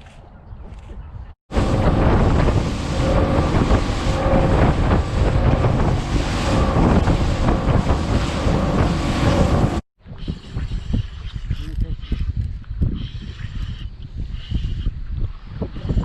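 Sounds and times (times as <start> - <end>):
wind buffeting microphone: 0.0 - 16.0
boat moving across water: 1.5 - 9.8.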